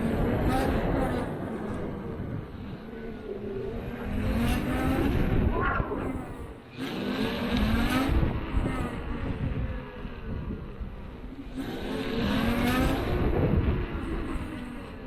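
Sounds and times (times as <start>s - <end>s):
electric unicycle grinding buzz: 0.0s - 15.0s
wind rumble on microphone: 0.0s - 15.0s.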